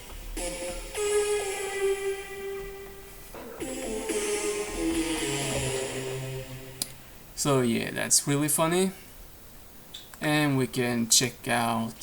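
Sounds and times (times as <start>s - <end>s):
airy synthesizer chord: 0.0s - 7.4s.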